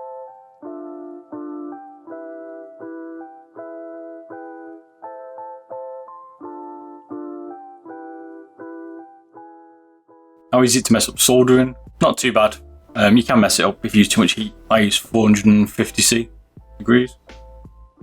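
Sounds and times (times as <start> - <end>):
soft piano chords: 0.0 - 18.0.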